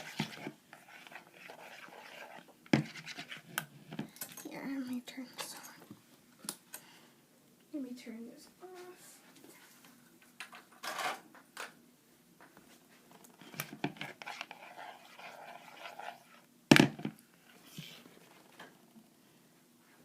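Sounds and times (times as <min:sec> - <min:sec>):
objects clattering on a tabletop: 0:10.4 - 0:11.8.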